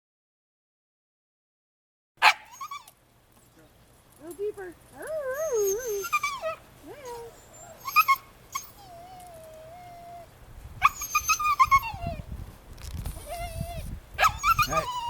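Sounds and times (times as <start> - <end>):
puppy howling and yipping: 2.2 - 2.9, 5.2 - 12.3, 13.2 - 15.0.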